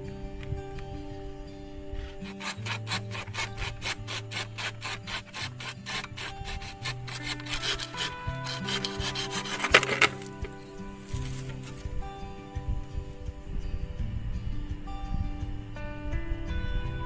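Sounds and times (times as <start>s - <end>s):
background music: 0.0s - 17.0s
hand tool rasping wood: 2.0s - 11.8s.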